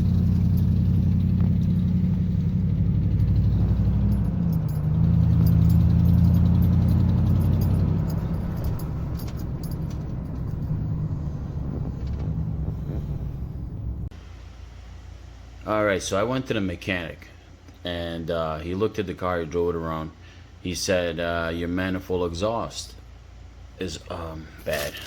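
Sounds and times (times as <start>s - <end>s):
engine ticking: 0.0s - 14.1s
truck engine running: 0.0s - 14.1s.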